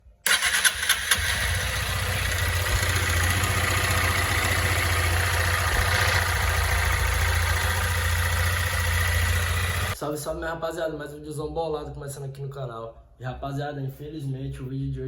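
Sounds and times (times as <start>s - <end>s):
motorcycle engine rattling: 0.3s - 10.0s
engine knocks: 1.1s - 10.0s.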